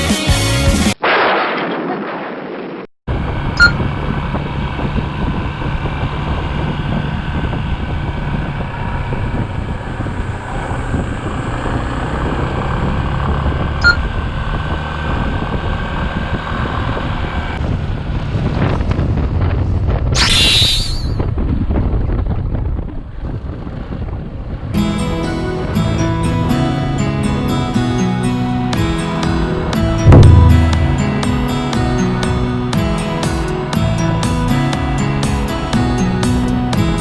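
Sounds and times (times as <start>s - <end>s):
wind buffeting microphone: 3.1s - 12.6s, 13.3s - 20.2s
falling whoosh: 30.1s - 31.7s
motorcycle engine running: 30.1s - 31.7s.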